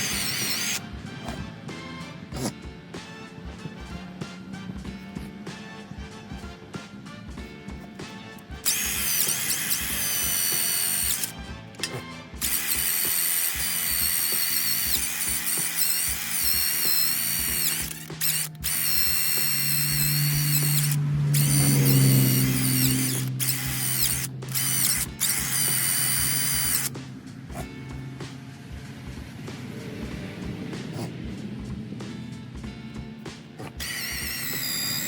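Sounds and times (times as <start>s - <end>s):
power tool whining: 0.0s - 1.4s, 8.5s - 27.0s, 33.6s - 35.0s.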